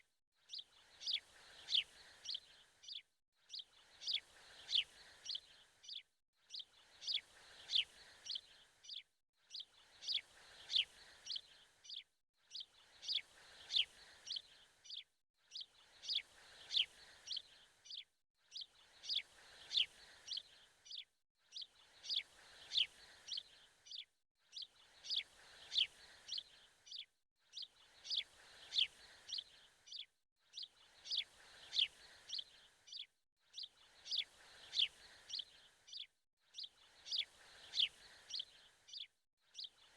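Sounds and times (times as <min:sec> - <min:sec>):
birds chirping: 0:00.5 - 0:18.0, 0:24.6 - 0:33.1, 0:34.0 - 0:39.0.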